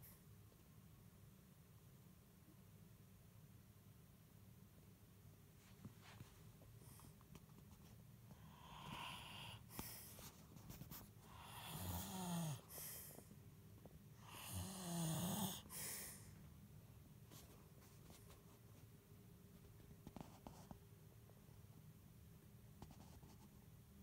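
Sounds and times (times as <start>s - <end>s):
man snoring: 11.3s - 12.8s, 14.2s - 15.9s.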